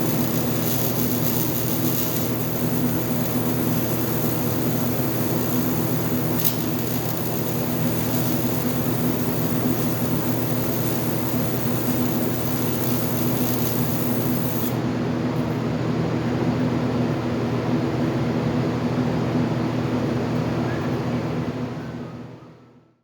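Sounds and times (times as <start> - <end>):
welding arc hiss: 0.0 - 14.8
welding arc buzzing hum: 0.0 - 15.1.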